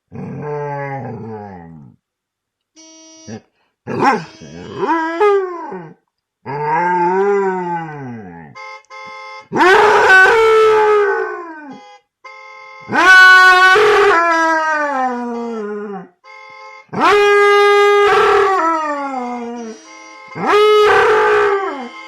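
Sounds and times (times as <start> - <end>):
car horn blasts: 2.8 - 5.2, 8.5 - 10.8, 11.6 - 13.2, 15.2 - 22.0.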